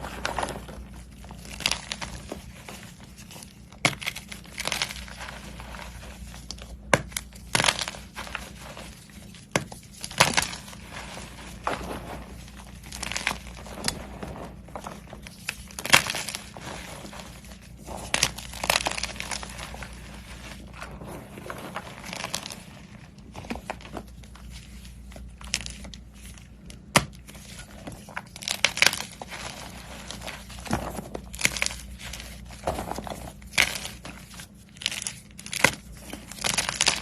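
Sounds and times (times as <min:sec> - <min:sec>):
slime crackling and popping: 0:17.9 - 0:20.1, 0:28.3 - 0:31.9, 0:34.8 - 0:37.0.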